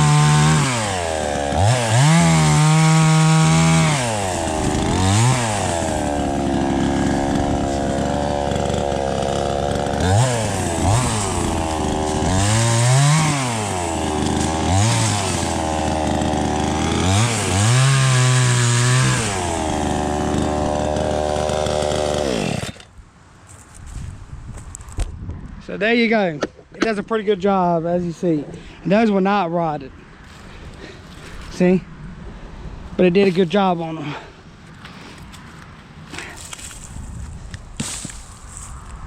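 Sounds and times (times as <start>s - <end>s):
chainsaw cutting wood: 0.0s - 23.0s, 37.8s - 38.7s.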